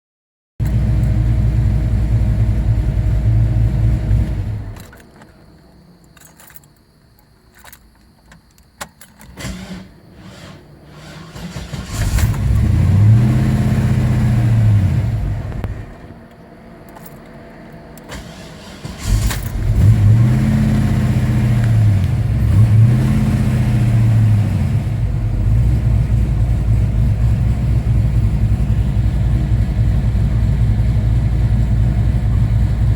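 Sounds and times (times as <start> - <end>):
engine idling: 0.6 - 4.8, 23.8 - 32.9
car engine running and revving: 0.6 - 4.9, 10.2 - 32.9
engine clicks: 4.2 - 9.9, 15.4 - 20.1.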